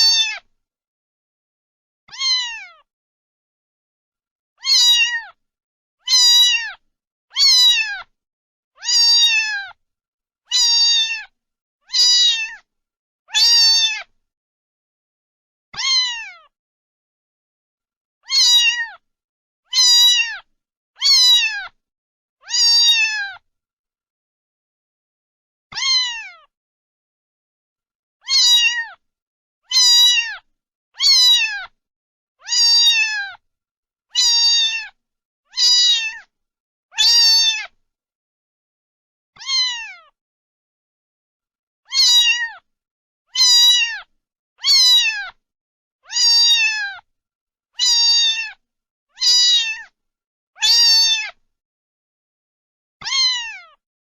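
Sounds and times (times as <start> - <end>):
cat meowing: 0.0 - 0.5, 2.1 - 2.9, 4.6 - 5.4, 6.0 - 8.1, 8.8 - 9.8, 10.5 - 11.3, 11.9 - 12.7, 13.3 - 14.1, 15.8 - 16.5, 18.2 - 19.0, 19.7 - 21.8, 22.4 - 23.4, 25.7 - 26.5, 28.2 - 29.0, 29.7 - 31.8, 32.4 - 33.4, 34.2 - 36.3, 36.9 - 37.8, 39.4 - 40.2, 41.9 - 42.7, 43.3 - 45.4, 46.0 - 47.0, 47.8 - 48.6, 49.2 - 50.0, 50.6 - 51.4, 53.0 - 53.8.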